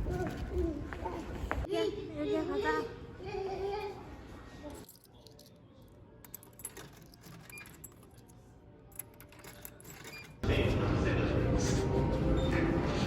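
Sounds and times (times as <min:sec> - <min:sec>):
small metallic jingles: 0:04.7 - 0:10.4.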